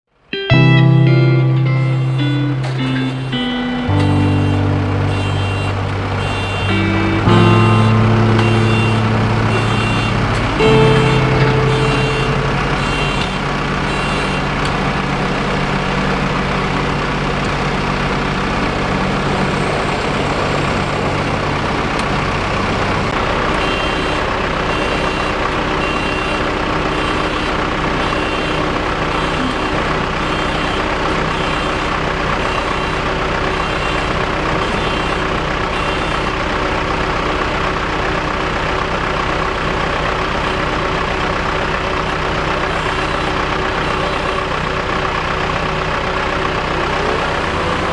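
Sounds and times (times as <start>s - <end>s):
combine harvester running: 0.5s - 47.9s
short high beeps: 1.6s - 14.6s.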